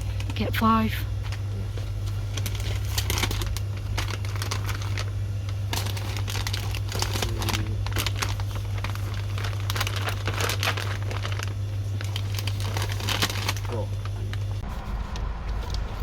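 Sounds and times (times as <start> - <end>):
plastic bag crinkling: 0.0 - 0.4, 1.1 - 15.8
steady low hum: 0.0 - 16.0.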